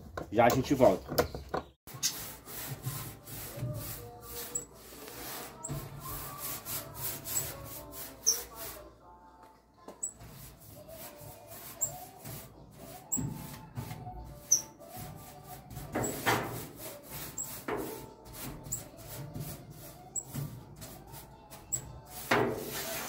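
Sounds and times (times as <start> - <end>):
rubbing and scrubbing strokes: 1.9 - 9.0, 10.0 - 23.0
small squeaks: 14.3 - 14.8.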